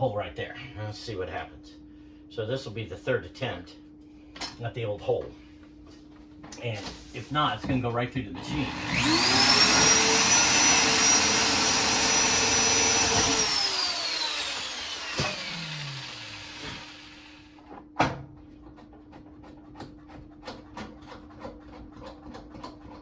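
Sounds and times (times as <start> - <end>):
electric drill whining: 8.4 - 17.6.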